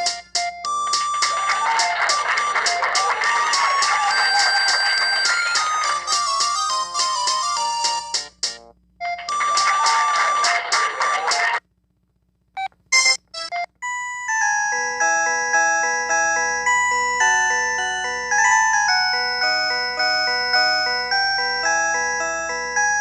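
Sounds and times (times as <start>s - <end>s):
mobile phone ringtones: 0.0s - 8.2s, 13.0s - 23.0s.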